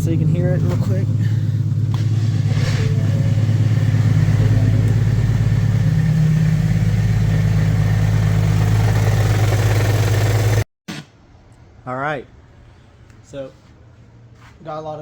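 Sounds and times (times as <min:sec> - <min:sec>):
car engine running with abnormal noise: 0:00.0 - 0:10.6.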